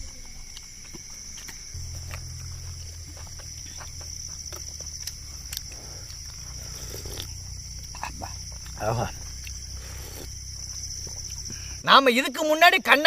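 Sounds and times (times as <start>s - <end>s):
insects shrilling: 0.0s - 13.0s
low rumble: 1.8s - 11.8s
low steady tone: 1.8s - 11.8s.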